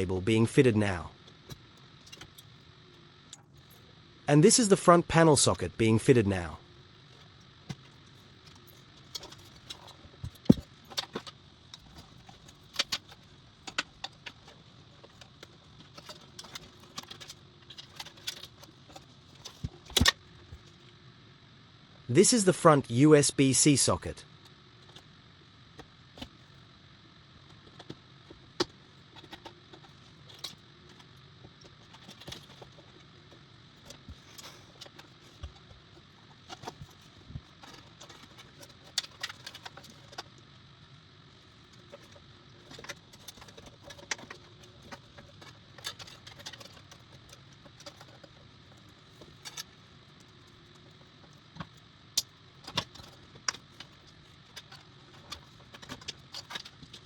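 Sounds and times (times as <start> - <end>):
computer parts clicking and tapping: 7.1 - 20.8, 27.5 - 40.4, 41.4 - 57.0.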